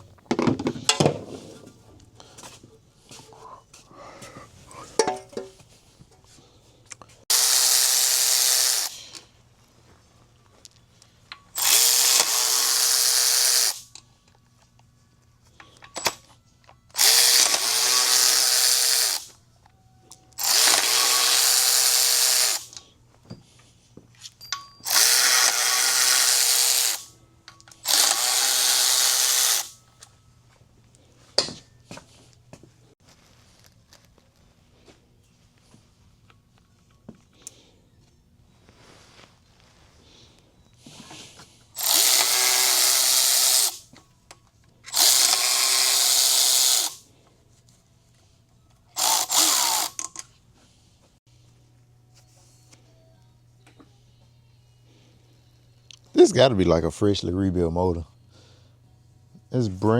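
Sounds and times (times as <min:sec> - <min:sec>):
power drill bursts: 0:07.3 - 0:09.1, 0:11.6 - 0:13.9, 0:16.9 - 0:19.3, 0:20.4 - 0:22.7, 0:24.8 - 0:27.1, 0:27.8 - 0:29.8, 0:41.8 - 0:43.8, 0:44.9 - 0:47.0, 0:49.0 - 0:50.1.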